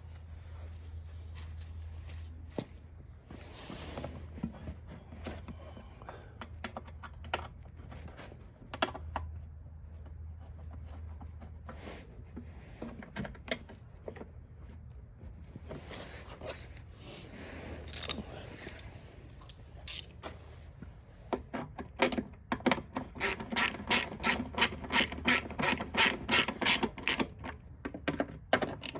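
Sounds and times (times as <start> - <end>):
plastic and metal parts clicking: 21.6 - 28.9.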